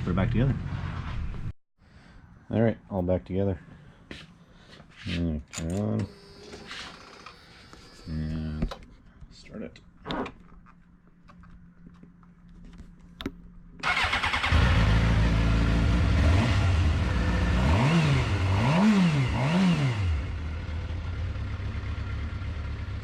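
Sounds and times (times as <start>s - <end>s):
motorcycle engine revving and idling: 13.8s - 23.0s.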